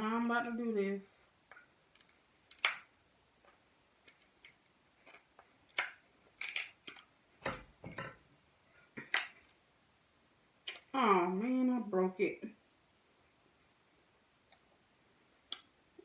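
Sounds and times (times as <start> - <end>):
shell cracking and crunching: 1.9 - 2.9, 4.0 - 7.1, 9.0 - 9.4.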